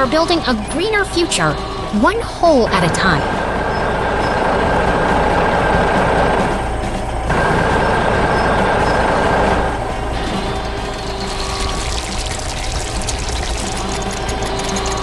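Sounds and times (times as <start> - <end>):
construction machinery engine rumble: 3.4 - 15.0.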